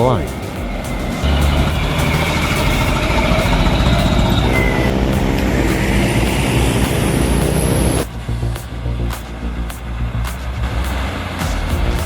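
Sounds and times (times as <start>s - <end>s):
heavy truck engine straining: 0.0s - 8.6s.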